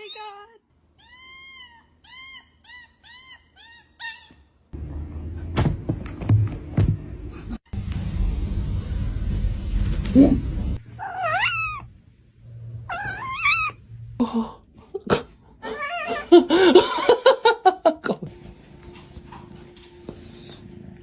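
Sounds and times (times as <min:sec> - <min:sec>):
cat meowing and yowling: 0:01.0 - 0:04.3, 0:11.0 - 0:11.9, 0:12.9 - 0:13.8, 0:15.6 - 0:16.4.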